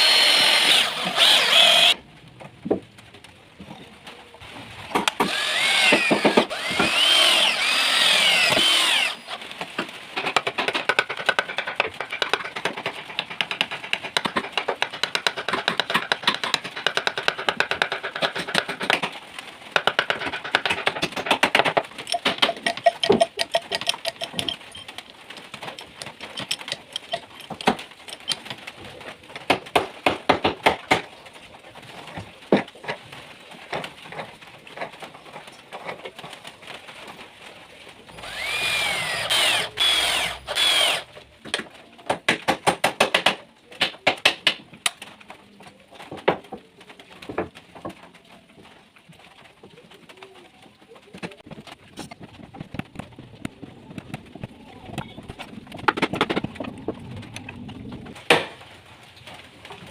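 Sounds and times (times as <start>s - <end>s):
power sanding drum on wood: 0.0s - 2.0s, 5.3s - 9.2s
irregular clicks and knocks: 4.9s - 28.7s.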